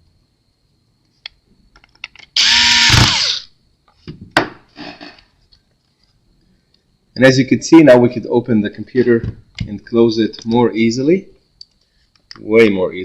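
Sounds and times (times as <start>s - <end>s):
power screwdriver whine: 2.4s - 3.5s.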